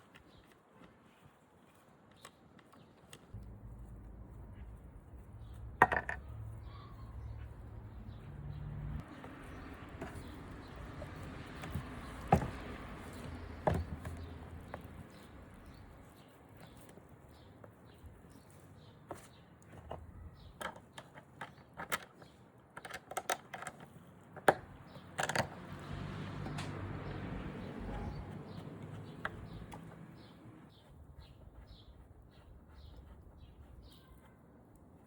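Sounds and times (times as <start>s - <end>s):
small bird chirping: 4.2s - 21.6s, 27.0s - 34.4s
sharp knocks and clicks: 28.0s - 30.5s.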